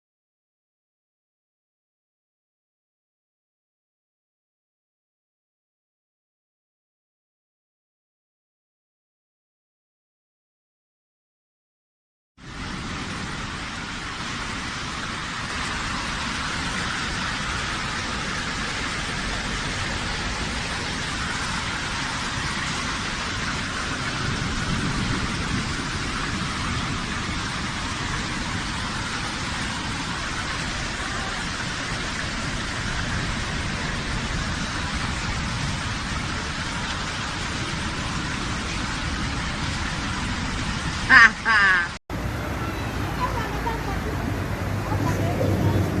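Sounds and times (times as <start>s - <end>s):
hail beating on surfaces: 12.4s - 41.8s.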